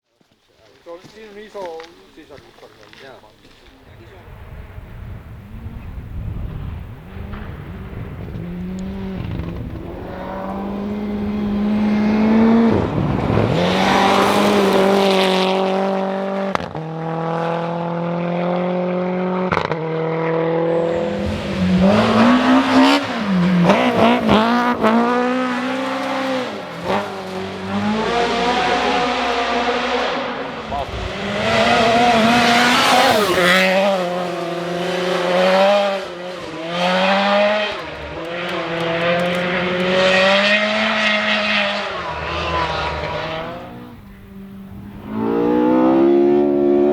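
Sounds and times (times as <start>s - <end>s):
rally car engine revving: 3.5s - 46.9s
gear change cracks: 37.6s - 40.2s.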